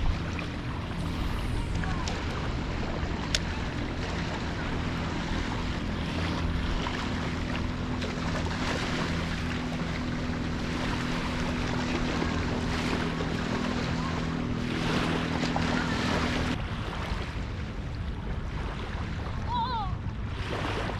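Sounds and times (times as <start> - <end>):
steady low hum: 0.0 - 20.4
water at the shore: 0.0 - 20.9
wind on microphone: 0.0 - 20.9.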